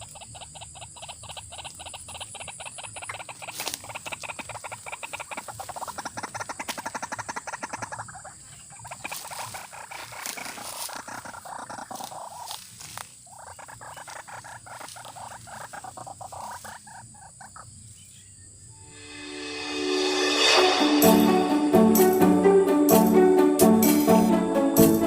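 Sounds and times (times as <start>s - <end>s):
bird rattling croak: 0.0s - 12.7s, 13.3s - 17.7s.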